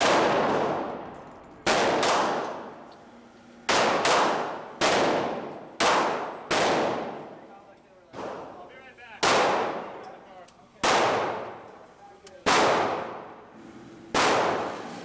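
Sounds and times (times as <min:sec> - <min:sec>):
gunshots with echo: 0:00.0 - 0:02.7, 0:03.7 - 0:07.4, 0:09.2 - 0:10.0, 0:10.8 - 0:11.6, 0:12.4 - 0:13.4, 0:14.2 - 0:14.8.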